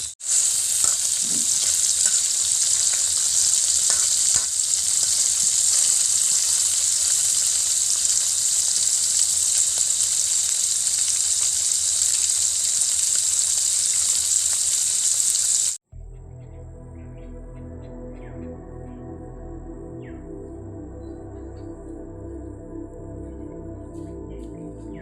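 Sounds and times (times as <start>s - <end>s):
fish sizzling in hot oil: 0.0s - 15.8s.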